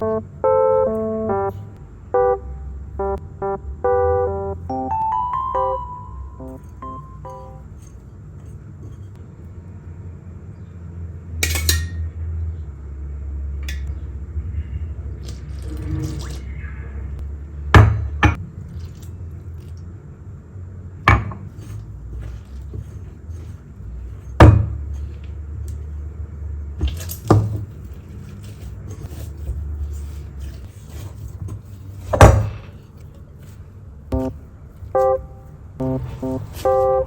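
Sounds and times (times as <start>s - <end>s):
steady low hum: 34.0s - 37.0s.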